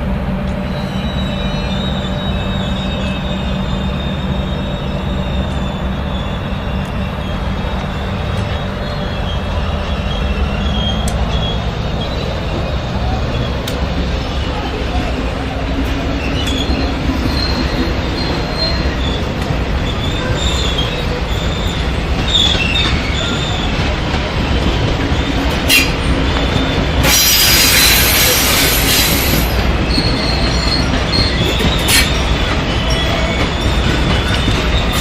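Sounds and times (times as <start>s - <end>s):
train rumbling past: 0.0s - 35.0s
wheel squeal: 0.6s - 14.9s, 15.9s - 35.0s
loud hiss: 27.0s - 29.5s.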